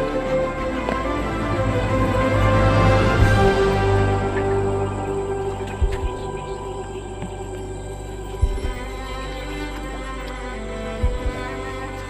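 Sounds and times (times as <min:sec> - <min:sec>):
ambient background music: 0:00.0 - 0:12.0
low thump: 0:05.7 - 0:06.4.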